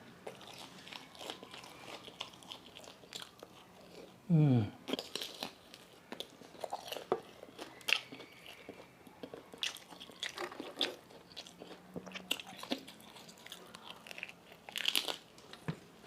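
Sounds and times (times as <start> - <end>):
chewing and crunching food: 0.0 - 15.7.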